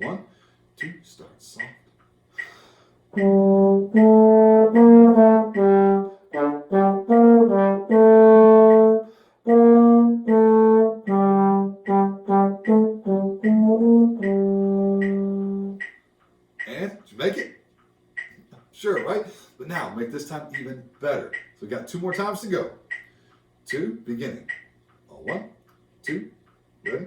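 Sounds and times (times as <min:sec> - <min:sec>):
metronome ticking: 0:00.0 - 0:00.2, 0:00.8 - 0:27.0
wind instrument melody: 0:03.2 - 0:15.8.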